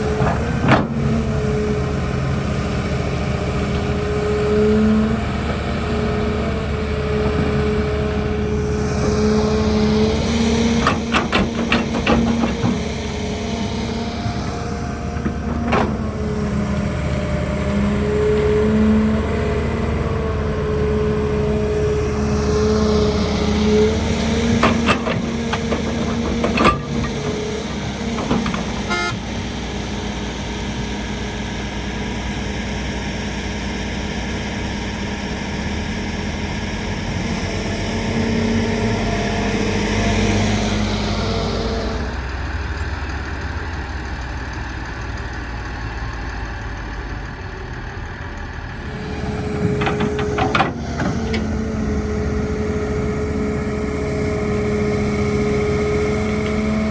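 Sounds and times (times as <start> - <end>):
excavator diesel engine running: 0.0 - 56.9.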